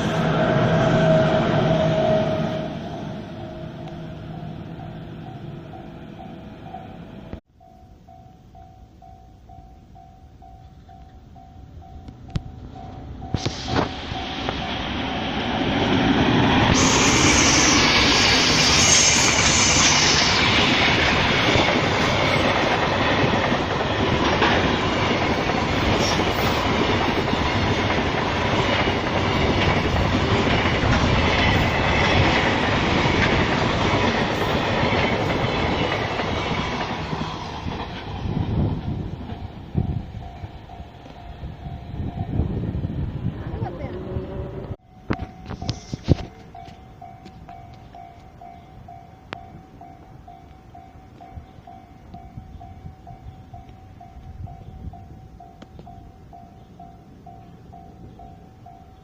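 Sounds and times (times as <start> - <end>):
train wheels clattering on rails: 12.0 - 42.5.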